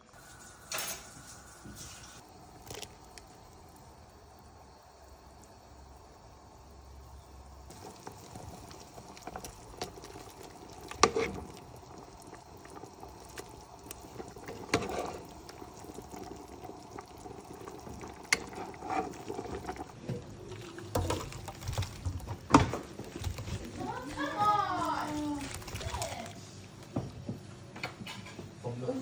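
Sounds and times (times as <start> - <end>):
liquid bubbling in pot: 0.0 - 28.3.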